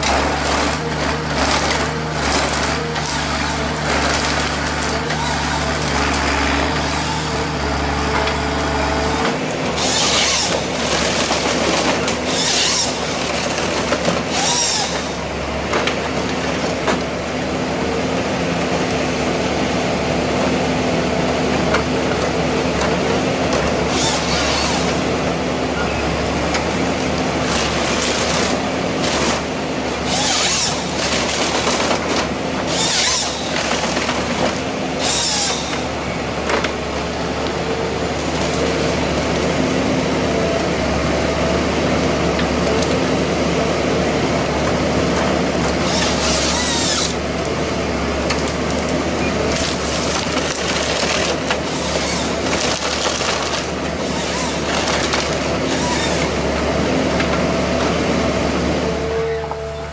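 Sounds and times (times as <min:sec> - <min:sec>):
heavy machinery humming: 0:00.0 - 0:59.9.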